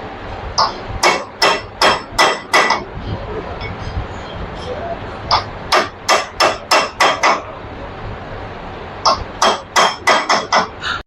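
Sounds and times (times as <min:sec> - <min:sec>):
hammer on ringing steel: 0:01.0 - 0:02.9, 0:09.1 - 0:10.7.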